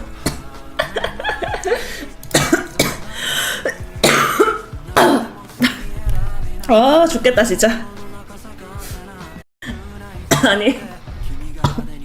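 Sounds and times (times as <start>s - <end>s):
woman coughing: 0.3s - 5.9s, 10.3s - 11.0s.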